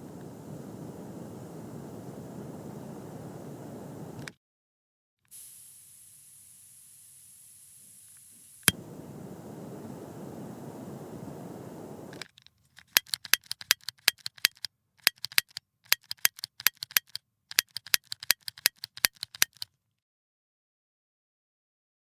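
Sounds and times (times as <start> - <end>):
gas lighter hissing: 0.0 - 4.3, 5.3 - 12.2
lighter igniter clicks: 0.0 - 4.3, 8.6 - 12.2.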